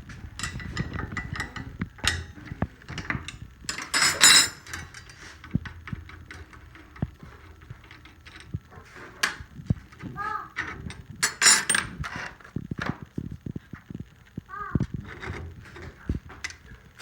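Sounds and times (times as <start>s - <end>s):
ringing metallic rattle: 0.4s - 8.6s, 10.8s - 11.9s.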